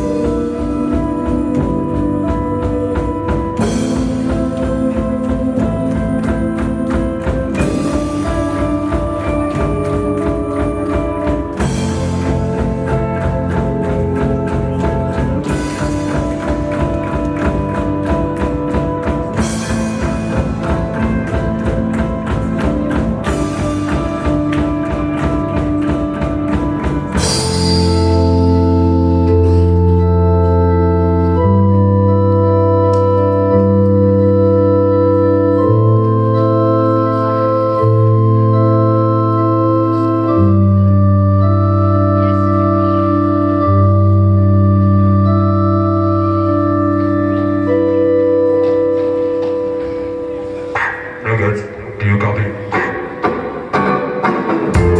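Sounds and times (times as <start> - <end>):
rhythmic percussive strikes: 0.0 - 30.1, 41.9 - 54.9
low bass: 0.0 - 49.5
sustained organ-like chords: 0.0 - 54.9.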